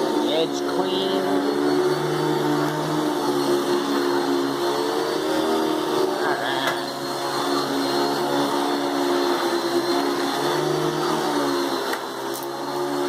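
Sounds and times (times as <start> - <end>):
vacuum cleaner running on carpet: 0.0 - 13.0.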